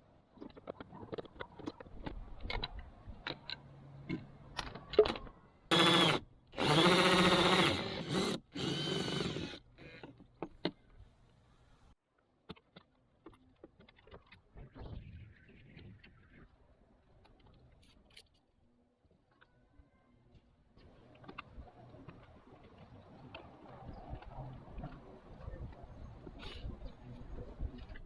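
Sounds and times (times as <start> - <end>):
power drill running: 5.7 - 10.0.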